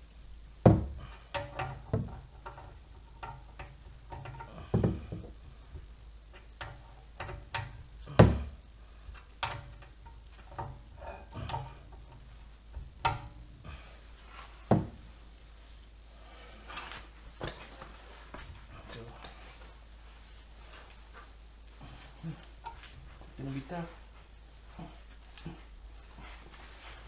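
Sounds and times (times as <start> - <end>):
hand tools knocking and clunking: 0.6 - 5.4, 6.3 - 8.6, 9.2 - 13.4, 14.6 - 15.1.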